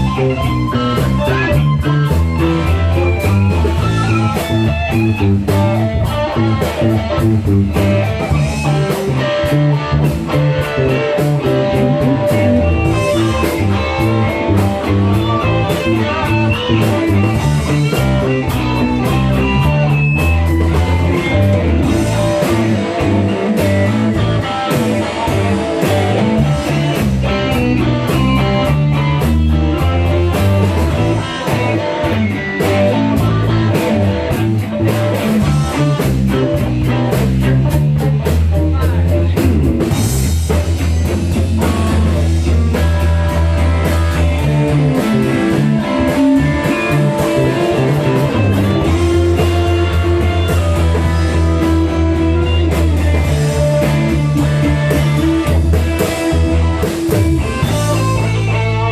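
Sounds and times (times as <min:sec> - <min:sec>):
blues-rock guitar music: 0:00.0 - 0:58.9.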